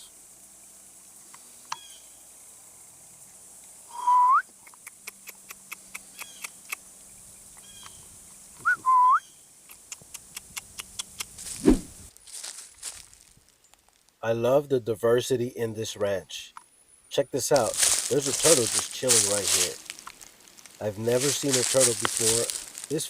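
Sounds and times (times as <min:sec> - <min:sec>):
whistle sliding upward: 0:03.9 - 0:04.4, 0:08.6 - 0:09.2
brief rushing burst: 0:11.5 - 0:12.0.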